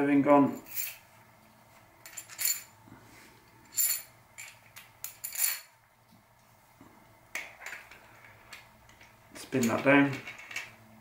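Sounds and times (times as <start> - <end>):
metal parts and tools clinking: 0.5 - 1.0, 2.0 - 2.8, 3.6 - 5.7, 7.4 - 10.8.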